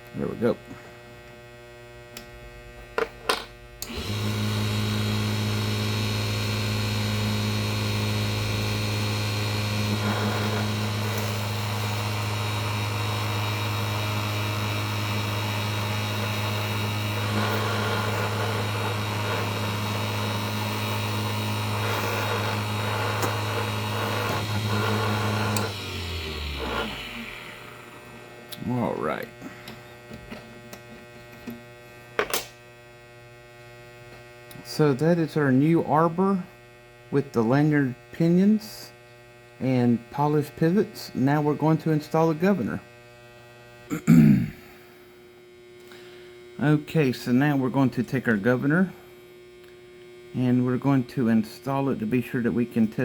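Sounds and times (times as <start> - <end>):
lathe motor humming: 3.8 - 30.2.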